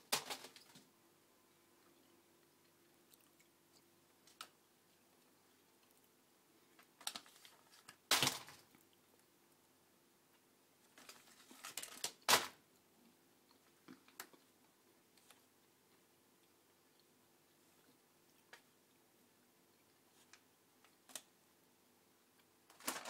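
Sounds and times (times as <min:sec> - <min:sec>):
packaging rustling: 0:11.0 - 0:12.5, 0:22.7 - 0:23.0.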